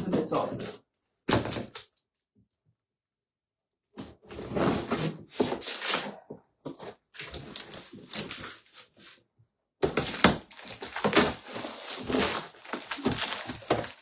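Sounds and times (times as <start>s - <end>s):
cardboard box being opened: 10.0s - 14.0s.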